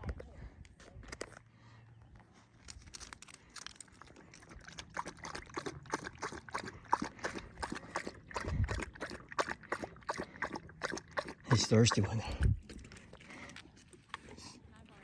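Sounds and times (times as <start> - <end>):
dog lapping water: 3.8 - 14.7.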